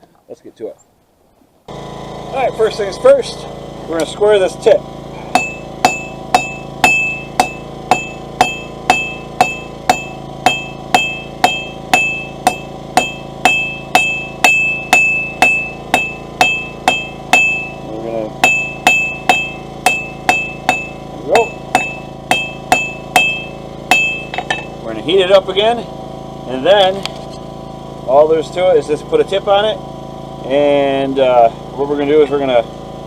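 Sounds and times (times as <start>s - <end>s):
hammer striking steel on anvil: 5.2s - 24.8s.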